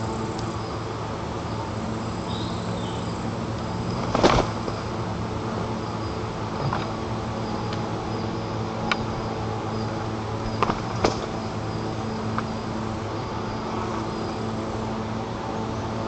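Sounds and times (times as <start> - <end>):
knocks on nest sticks: 10.6 - 11.4.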